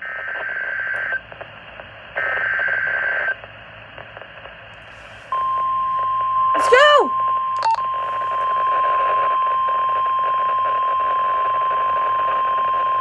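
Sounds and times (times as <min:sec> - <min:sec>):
loud steady high alarm tone: 0:05.3 - 0:09.7.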